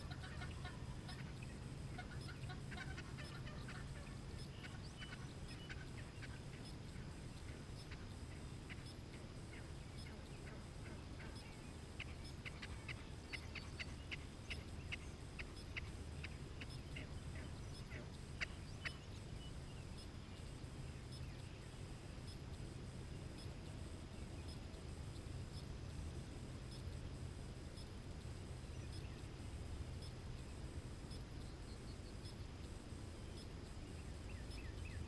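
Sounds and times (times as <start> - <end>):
wild turkey clucking: 0.0 - 19.1
faint low rumble: 0.0 - 35.0.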